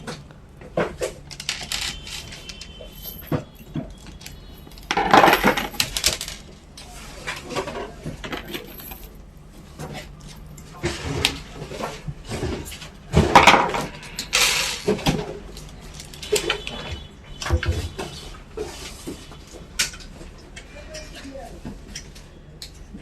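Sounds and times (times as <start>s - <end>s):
rustling and scraping: 0.7s - 15.4s
computer parts clicking and clinking: 1.3s - 6.5s.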